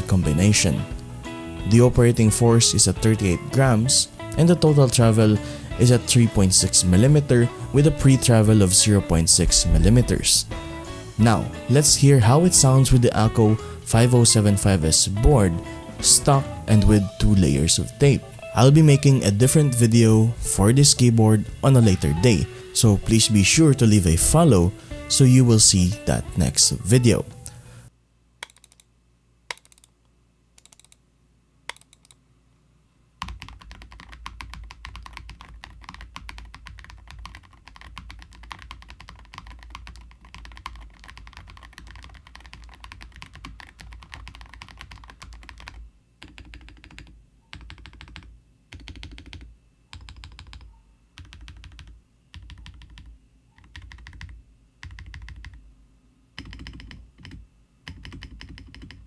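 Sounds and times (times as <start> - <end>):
mechanical keyboard typing: 28.4 - 28.9, 29.5 - 29.9, 30.6 - 31.0, 31.7 - 32.2, 33.2 - 55.6, 56.4 - 59.0.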